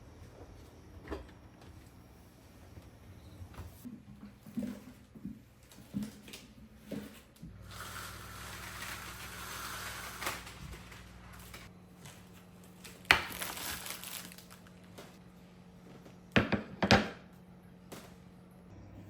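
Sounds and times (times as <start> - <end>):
knocks of household handling: 16.4 - 17.2.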